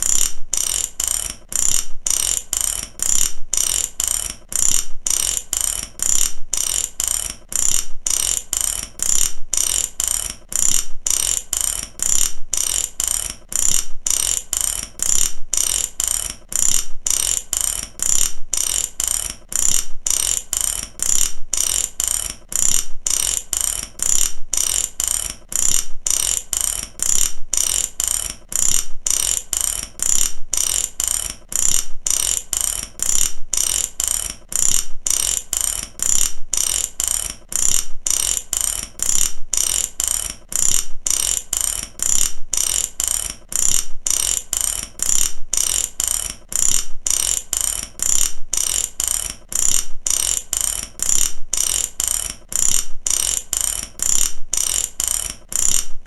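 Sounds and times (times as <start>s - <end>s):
mechanical ratchet clicking: 0.0s - 56.0s.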